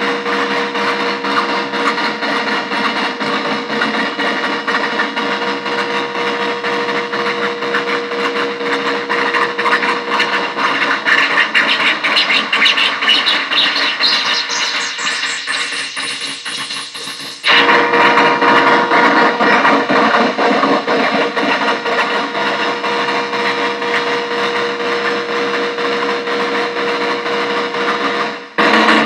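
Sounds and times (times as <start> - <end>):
harsh synthesizer buzz: 0.0 - 27.8
bright high synthesizer noise: 8.9 - 18.4
steady synthesizer tone: 9.0 - 18.0.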